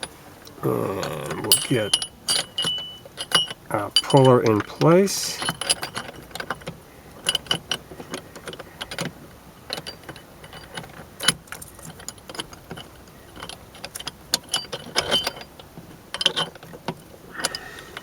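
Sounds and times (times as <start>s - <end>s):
metal tool clinking: 1.0s - 9.1s, 9.7s - 15.5s.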